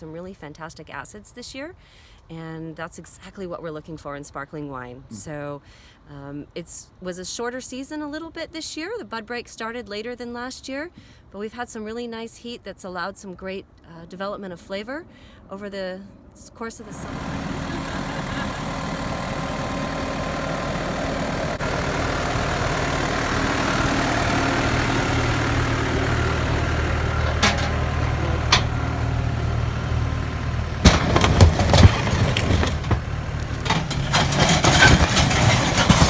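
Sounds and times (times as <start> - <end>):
engine running: 16.9 - 36.0
clattering and knocking: 20.5 - 36.0.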